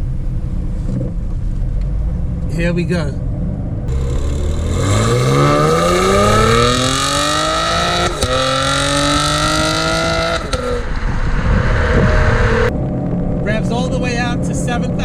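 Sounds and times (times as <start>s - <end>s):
car engine revving under acceleration: 0.8s - 12.7s.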